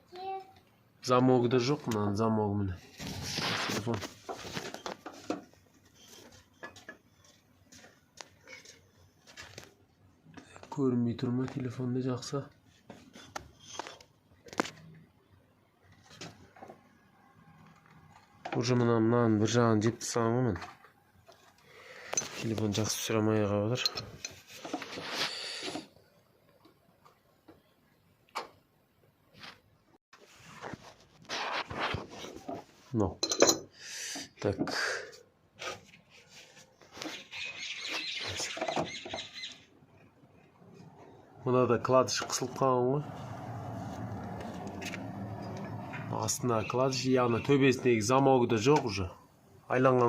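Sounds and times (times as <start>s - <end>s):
scraping rub: 30.2s - 32.7s.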